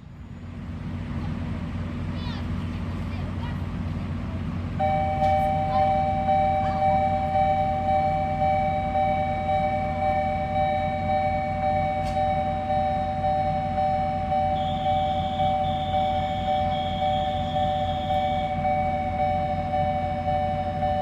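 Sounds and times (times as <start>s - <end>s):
level-crossing alarm bell: 4.8s - 21.0s.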